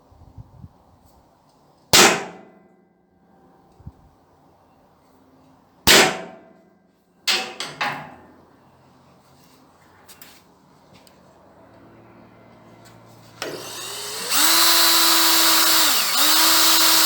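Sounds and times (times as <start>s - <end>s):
metal clangs on steel: 7.2s - 8.2s.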